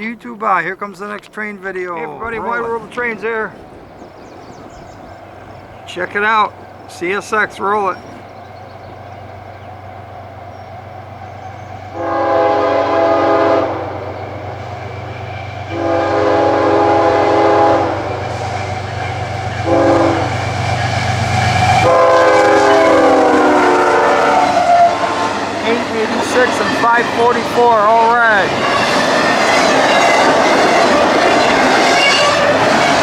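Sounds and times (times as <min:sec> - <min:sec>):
diesel locomotive rumble: 0:00.0 - 0:33.0
locomotive air horn blasts: 0:11.9 - 0:28.9, 0:29.5 - 0:33.0.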